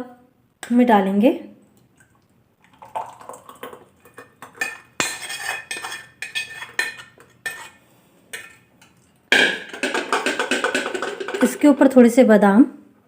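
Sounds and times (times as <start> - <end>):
spoon scraping a pan: 3.6 - 11.7.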